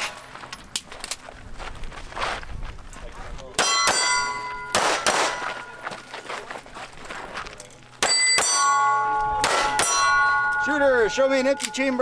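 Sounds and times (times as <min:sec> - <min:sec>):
pistol shots: 0:03.6 - 0:05.8, 0:09.4 - 0:10.2
steel targets ringing: 0:03.6 - 0:06.0, 0:08.0 - 0:12.0.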